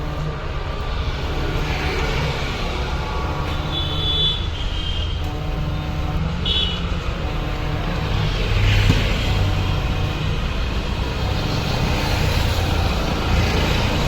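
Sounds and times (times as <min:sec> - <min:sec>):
vehicle engines rumbling: 0:00.0 - 0:14.0
short high-pitched beeps: 0:08.9 - 0:12.4.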